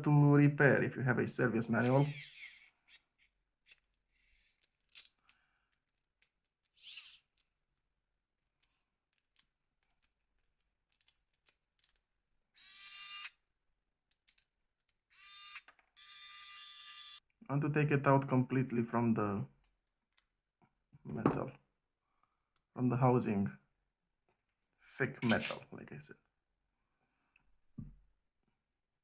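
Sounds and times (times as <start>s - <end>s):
phone parts scraping: 1.8s - 7.4s, 25.2s - 25.6s.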